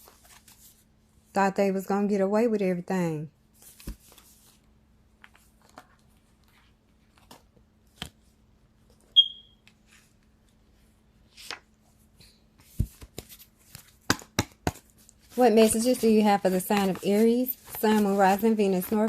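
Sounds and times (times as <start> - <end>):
card rustle: 5.2 - 9.1, 12.6 - 19.0
cards shuffling and snapping: 7.1 - 8.3, 12.7 - 19.0
high-pitched ping: 9.2 - 9.6.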